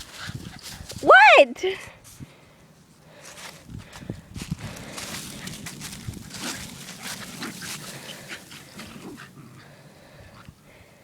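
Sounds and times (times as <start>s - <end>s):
dogs rustling: 0.0s - 1.1s, 3.2s - 10.6s.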